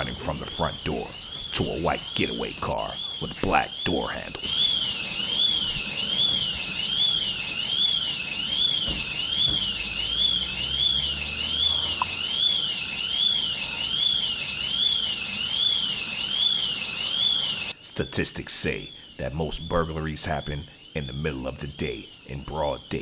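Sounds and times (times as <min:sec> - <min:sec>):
electronic alarm siren sweeping: 0:00.0 - 0:17.8.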